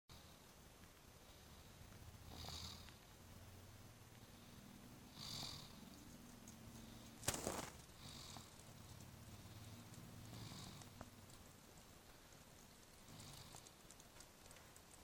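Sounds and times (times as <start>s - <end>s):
faint snoring: 1.3s - 3.1s, 4.2s - 6.0s, 7.9s - 8.6s, 9.3s - 11.1s, 13.0s - 13.8s.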